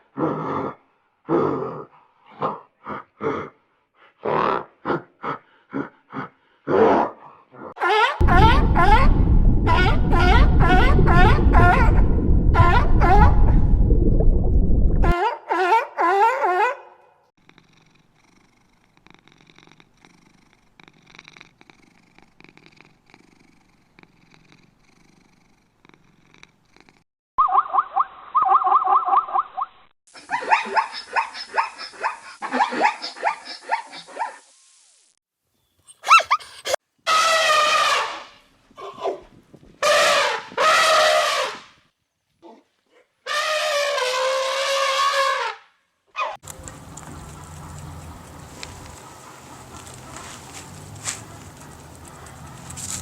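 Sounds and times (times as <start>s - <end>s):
cat purring: 17.4s - 27.0s
animal calling: 46.2s - 53.0s.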